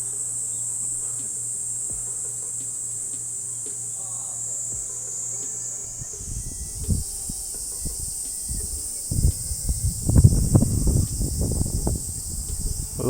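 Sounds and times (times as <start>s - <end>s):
insects droning: 0.0s - 13.0s
soft low thumps: 1.2s - 3.9s.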